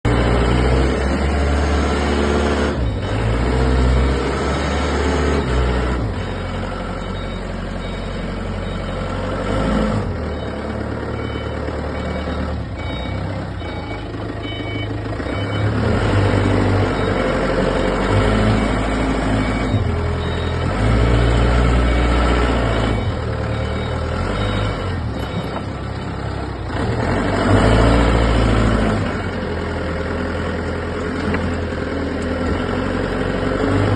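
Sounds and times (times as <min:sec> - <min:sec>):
forklift engine revving: 0:00.1 - 0:33.9
reversing alarm beeping: 0:00.4 - 0:26.7.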